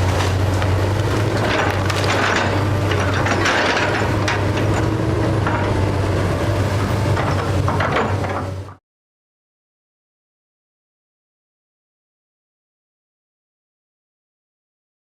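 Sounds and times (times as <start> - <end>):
wood cracking and splintering: 0.0 - 4.9
debris crunching: 0.0 - 5.8
demolition machine engine: 0.0 - 8.8.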